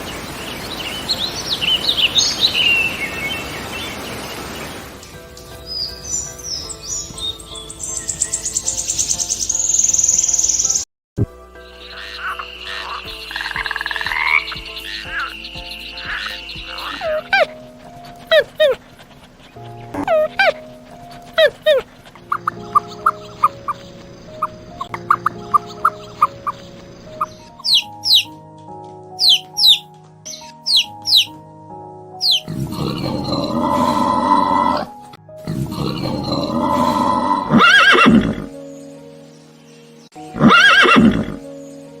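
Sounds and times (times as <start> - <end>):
background music sustained notes: 0.0 - 42.0
frogs croaking: 11.5 - 28.4, 29.2 - 31.4, 32.2 - 42.0
horse neighing: 32.3 - 34.9, 35.5 - 38.5, 40.4 - 41.5.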